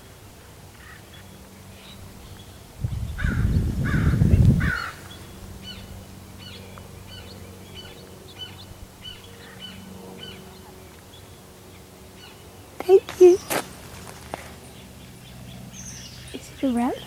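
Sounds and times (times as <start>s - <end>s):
low microphone rumble: 2.7s - 6.1s
crow cawing: 3.2s - 5.1s
small bird chirping: 12.2s - 17.0s.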